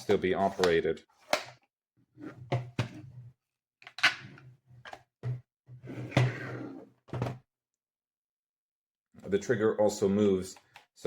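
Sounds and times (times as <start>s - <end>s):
plastic scraping and sliding: 0.0s - 1.4s.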